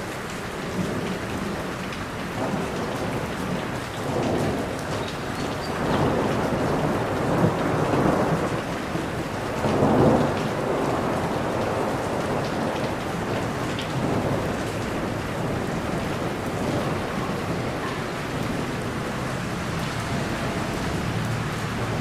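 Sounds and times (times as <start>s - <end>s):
steady rain: 0.0s - 22.0s
low rolling thunder: 0.7s - 22.0s.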